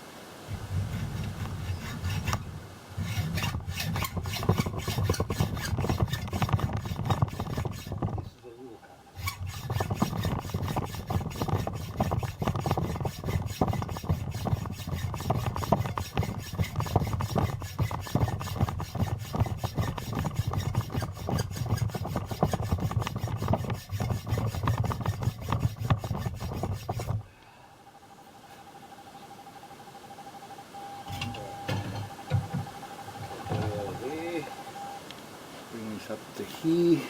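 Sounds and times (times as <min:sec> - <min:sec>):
rapid scraping on steel bar: 0:00.5 - 0:08.3, 0:09.1 - 0:27.3.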